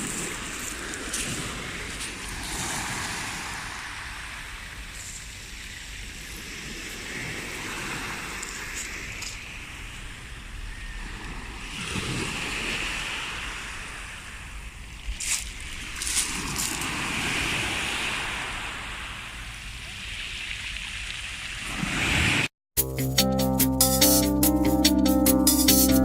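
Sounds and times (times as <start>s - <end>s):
waves washing onto shore: 0.0s - 9.9s, 15.2s - 22.5s.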